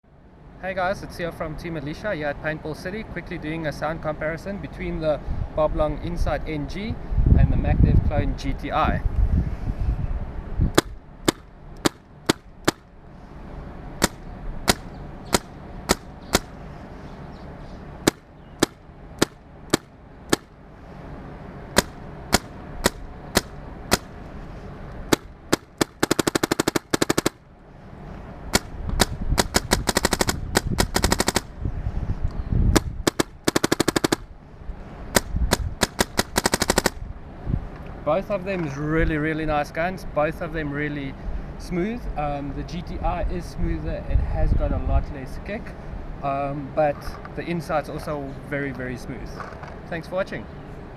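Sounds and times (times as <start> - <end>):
paintball marker shots popping: 10.8 - 12.8, 14.0 - 16.5, 18.0 - 20.5, 21.8 - 24.1, 25.1 - 27.4, 28.5 - 31.5, 32.7 - 34.2, 35.2 - 37.0.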